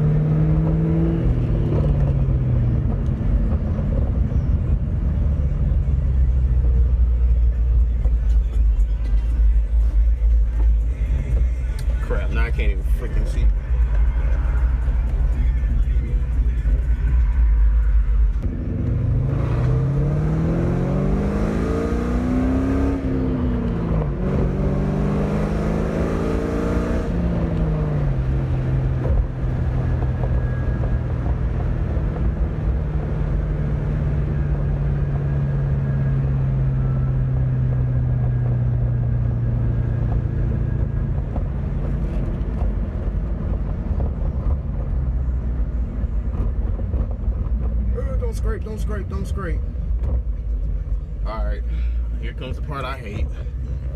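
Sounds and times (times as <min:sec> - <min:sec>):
car engine accelerating through gears: 0:00.0 - 0:07.1, 0:18.3 - 0:47.9.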